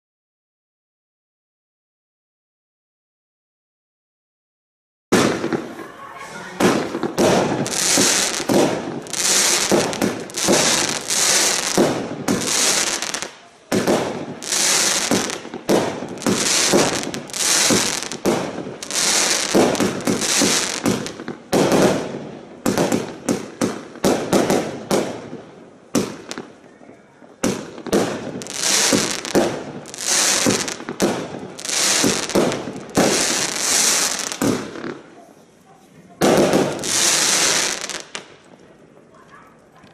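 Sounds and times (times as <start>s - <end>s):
firework shots firing: 5.1s - 5.8s, 6.5s - 26.5s, 27.4s - 35.0s, 36.2s - 38.4s.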